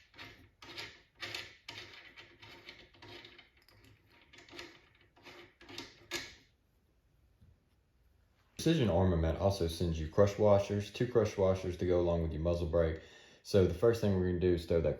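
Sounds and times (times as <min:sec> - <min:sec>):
metal scrapes and clicks: 0:00.0 - 0:06.4.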